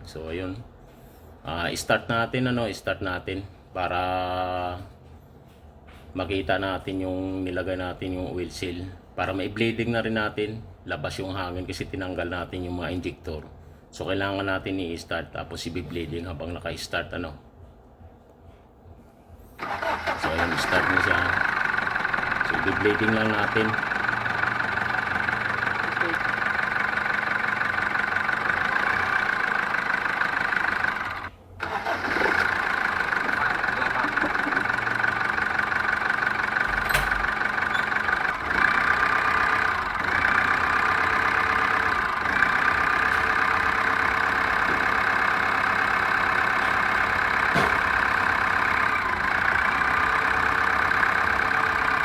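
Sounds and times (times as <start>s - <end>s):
diesel engine idling: 19.6s - 52.0s.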